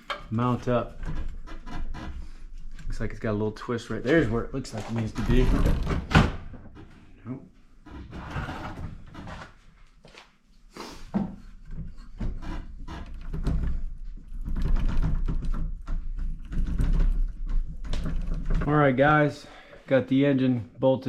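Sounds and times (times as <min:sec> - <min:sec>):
metal parts knocking and clunking: 0:11.6 - 0:18.7.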